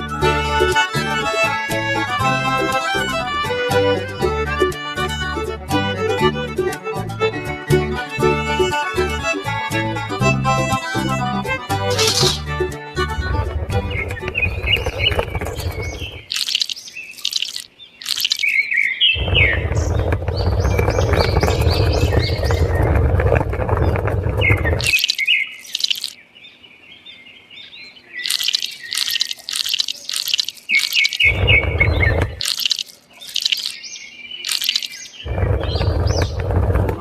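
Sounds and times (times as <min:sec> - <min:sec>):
small birds chirping: 0:11.9 - 0:37.0
loud low rushing noise: 0:13.0 - 0:15.9.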